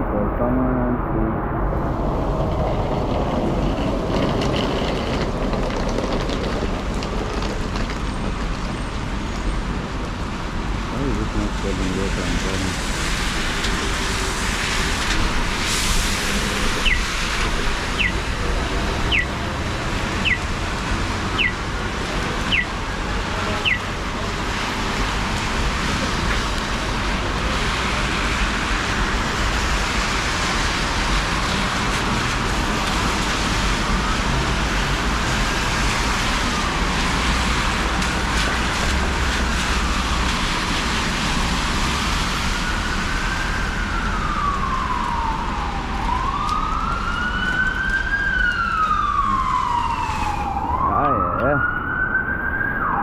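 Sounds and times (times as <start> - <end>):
rain: 2.0 - 51.6
wet street traffic hiss: 9.0 - 48.2
ambulance siren wailing: 16.3 - 53.0.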